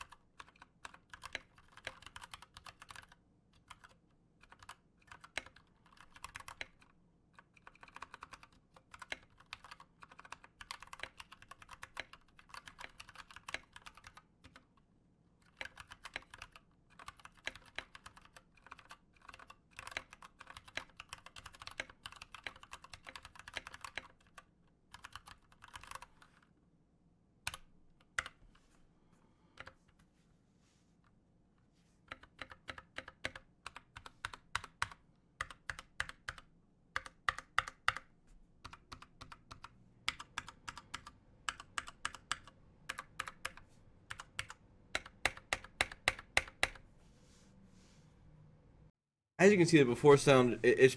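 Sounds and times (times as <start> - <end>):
mechanical keyboard typing: 0.0 - 14.7, 15.4 - 26.5, 32.1 - 46.8.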